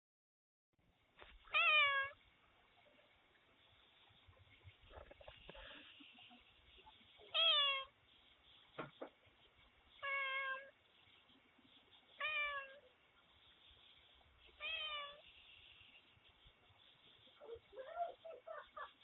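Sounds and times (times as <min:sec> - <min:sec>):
cat meowing: 0:01.5 - 0:02.2, 0:07.3 - 0:07.9, 0:10.0 - 0:10.8, 0:12.2 - 0:12.9, 0:14.6 - 0:15.2.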